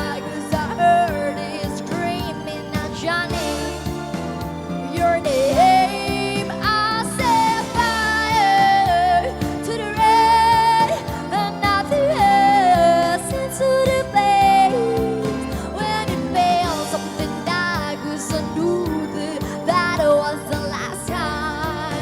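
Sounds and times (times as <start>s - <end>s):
instrumental accompaniment: 0.0s - 22.0s
woman singing: 0.0s - 22.0s.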